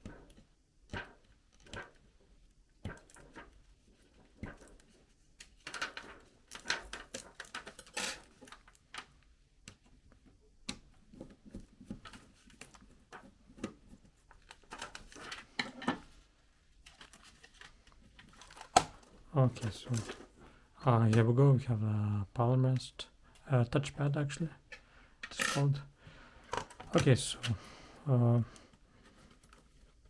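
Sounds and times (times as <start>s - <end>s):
plastic case clicks and scrapes: 4.4s - 9.1s, 16.9s - 20.4s.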